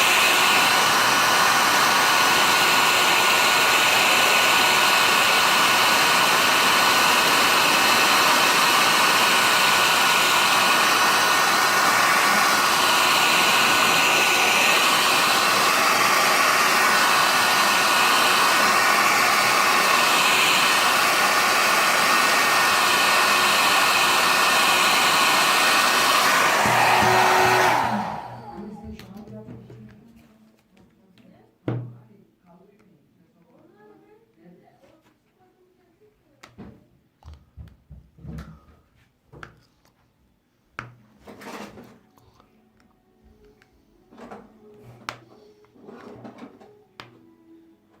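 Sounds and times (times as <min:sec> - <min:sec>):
hair dryer blowing: 0:00.0 - 0:29.2.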